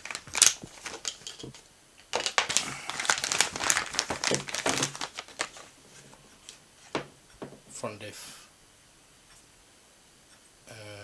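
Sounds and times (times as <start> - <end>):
plastic packaging crinkling: 0.0 - 7.6.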